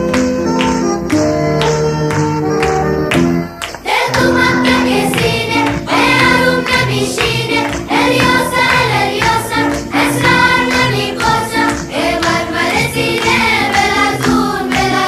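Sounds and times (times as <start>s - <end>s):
song with singing voices: 3.6s - 15.0s.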